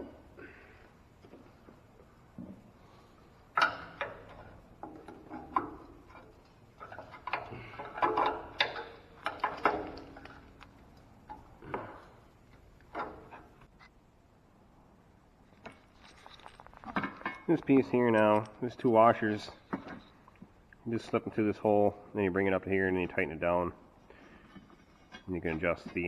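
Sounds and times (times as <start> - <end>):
metal parts and tools clinking: 15.4 - 20.3.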